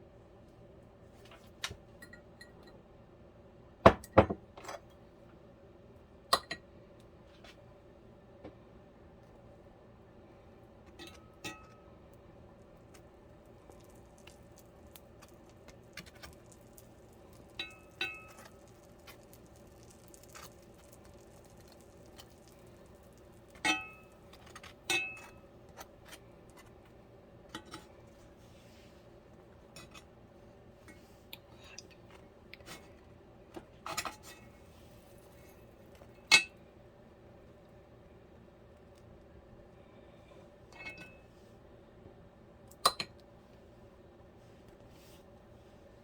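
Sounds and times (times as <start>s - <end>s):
faint steady hum: 0.0s - 46.0s
dishes and cutlery clinking: 17.6s - 18.6s, 23.6s - 25.4s, 40.8s - 41.2s.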